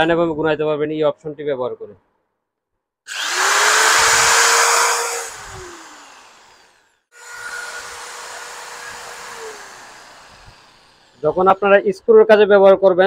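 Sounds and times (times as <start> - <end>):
electric drill whining: 3.1 - 11.8.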